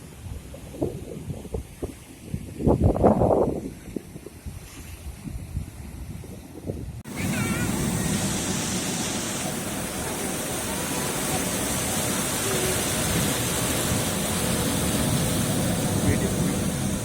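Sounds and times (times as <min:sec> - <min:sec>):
ocean surf on shore: 0:03.9 - 0:17.0.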